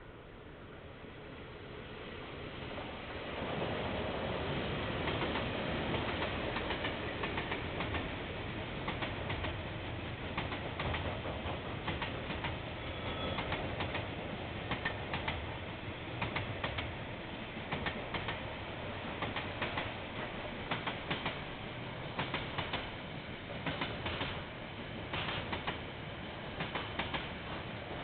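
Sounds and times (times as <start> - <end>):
train rumble: 0.0 - 28.0
train wheels clicking over rail joints: 5.0 - 28.0.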